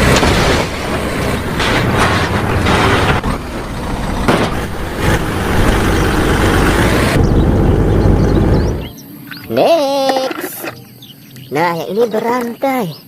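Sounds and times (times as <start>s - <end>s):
truck engine running: 0.0s - 9.0s.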